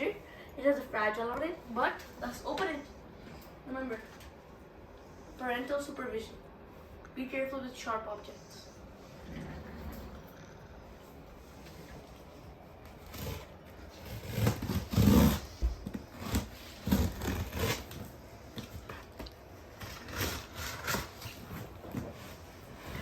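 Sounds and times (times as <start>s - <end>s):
cardboard box being cut open: 13.1s - 15.5s, 16.1s - 18.1s, 19.8s - 21.3s.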